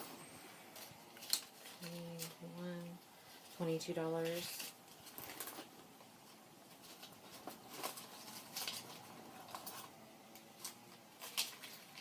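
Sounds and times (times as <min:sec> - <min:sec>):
rustling in a purse: 0:06.7 - 0:10.0.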